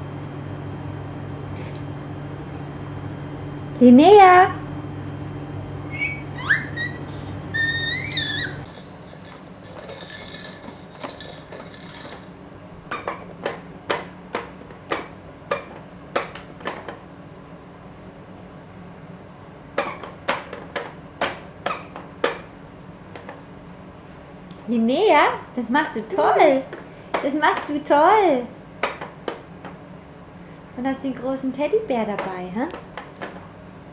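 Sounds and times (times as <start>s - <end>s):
baby squealing: 5.9s - 8.8s.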